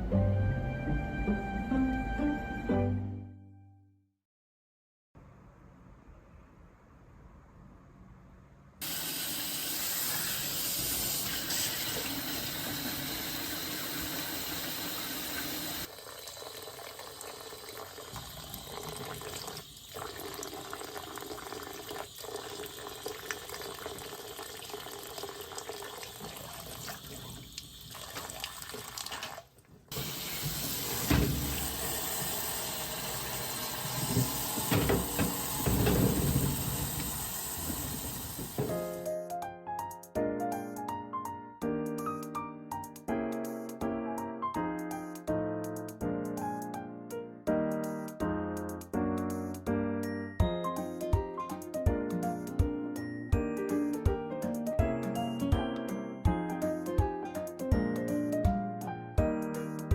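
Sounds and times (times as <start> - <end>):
tap water running into sink: 8.8 - 38.9
dull knocks: 34.1 - 38.9.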